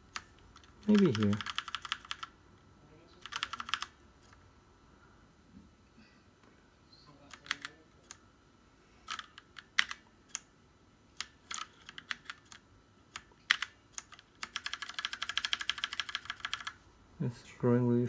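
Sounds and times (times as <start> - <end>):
mechanical keyboard key clicks: 0.2 - 2.3, 9.1 - 10.5, 11.2 - 16.8.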